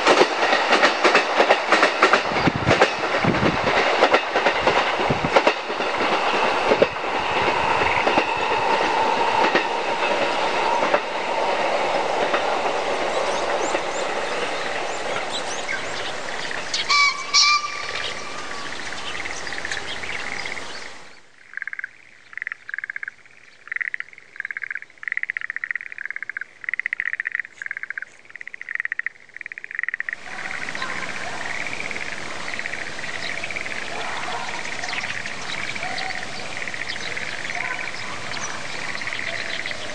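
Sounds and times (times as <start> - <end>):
train wheels clattering: 0.0 - 18.5
frogs calling: 7.5 - 39.9.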